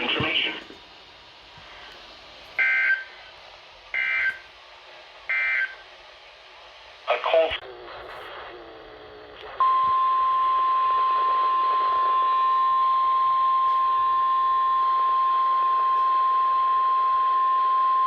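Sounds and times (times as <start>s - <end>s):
radio hiss: 0.0s - 14.2s
steady alarm tone: 2.6s - 3.2s, 3.9s - 4.5s, 5.3s - 5.8s, 9.6s - 18.0s.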